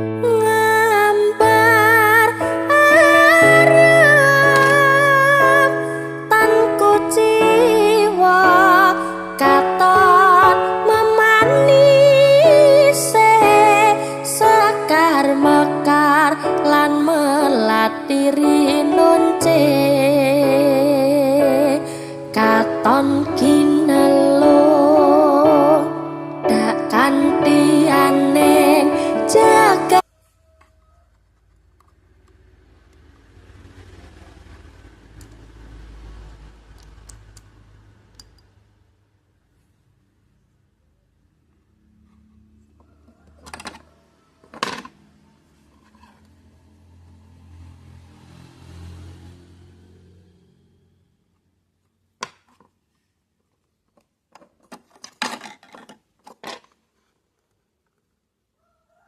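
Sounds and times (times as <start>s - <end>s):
background music: 0.0s - 30.0s
plastic parts clicking: 53.6s - 56.8s.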